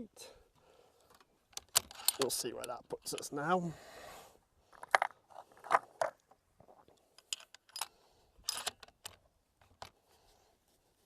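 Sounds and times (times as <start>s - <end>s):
rifle bolt metallic clicks: 1.5s - 3.3s.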